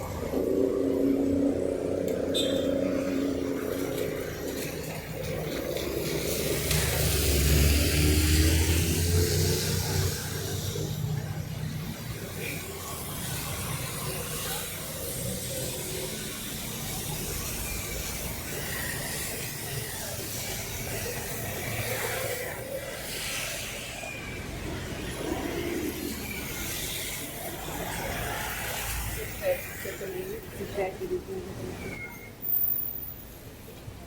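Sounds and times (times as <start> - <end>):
street traffic hiss: 0.0 - 34.0
vehicle swishing past: 0.1 - 14.8.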